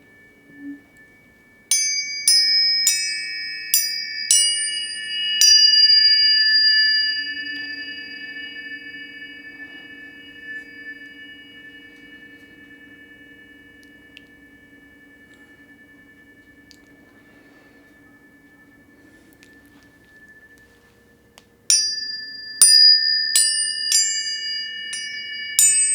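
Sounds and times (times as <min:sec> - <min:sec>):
tuning forks ringing: 0:00.0 - 0:25.9.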